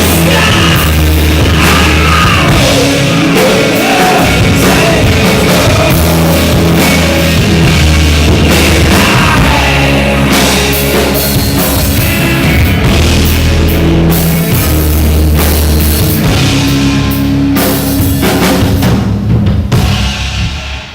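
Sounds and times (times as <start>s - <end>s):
heavy rock music: 0.0s - 20.9s.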